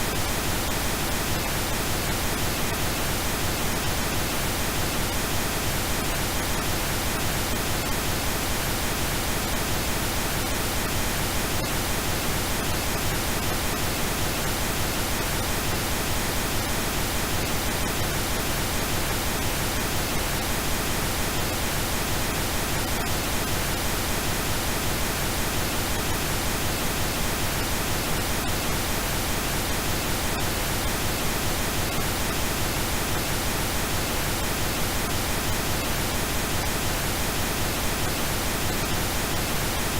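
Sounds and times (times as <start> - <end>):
pink noise hiss: 0.0 - 39.9.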